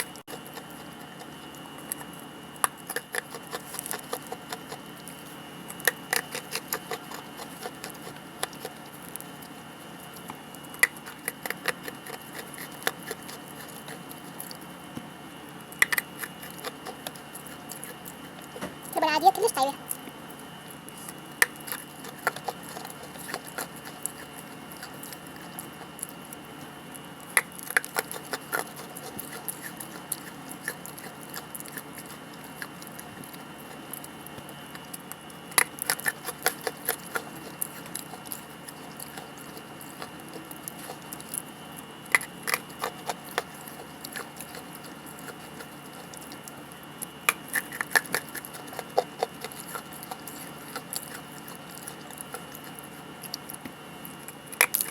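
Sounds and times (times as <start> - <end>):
crunchy chewing: 0.0 - 54.9.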